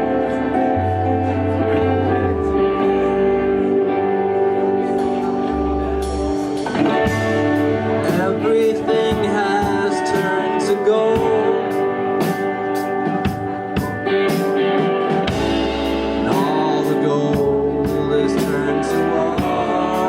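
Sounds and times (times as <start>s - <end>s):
live band music: 0.0s - 20.0s
person singing: 6.7s - 14.3s, 15.2s - 20.0s.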